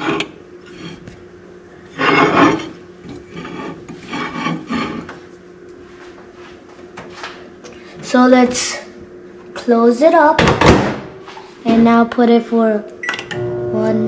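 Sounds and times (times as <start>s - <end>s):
dishes scraping: 0.0s - 1.2s, 1.9s - 5.3s.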